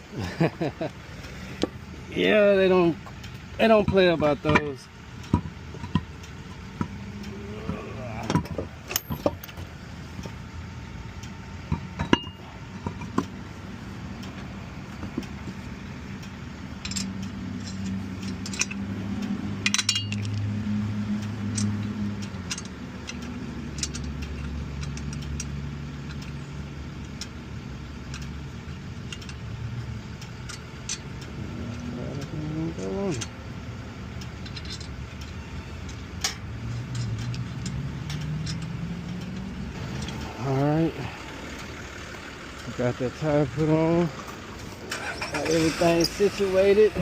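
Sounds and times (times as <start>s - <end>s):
vehicle engine running: 0.0s - 47.0s
metal tool clinks and knocks: 8.2s - 9.6s, 11.7s - 13.2s, 16.8s - 18.8s, 19.6s - 20.5s, 34.4s - 40.2s.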